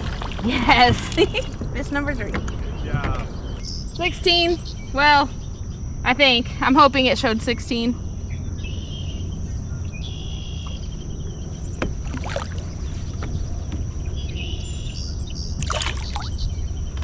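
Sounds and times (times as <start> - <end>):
kayak on water: 0.0 - 3.6, 10.6 - 17.0
knocks against boat: 0.1 - 3.3, 11.7 - 12.4, 13.1 - 13.9.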